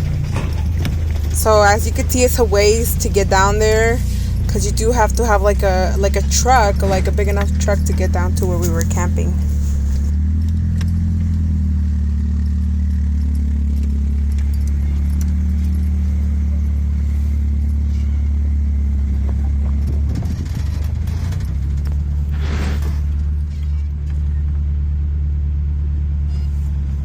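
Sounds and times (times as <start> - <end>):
truck engine and road rumble: 0.0 - 27.0.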